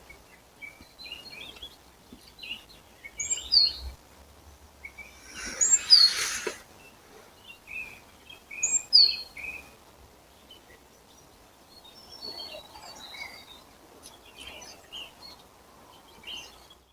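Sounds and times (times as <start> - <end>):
faint outdoor hiss: 0.0 - 16.9
birds chirping and whistling: 5.0 - 6.6
loud falling bird whistle: 5.3 - 6.6.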